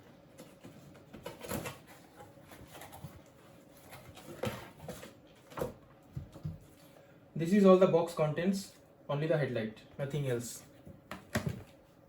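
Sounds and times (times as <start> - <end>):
packaging rustling and scraping: 0.3 - 5.7.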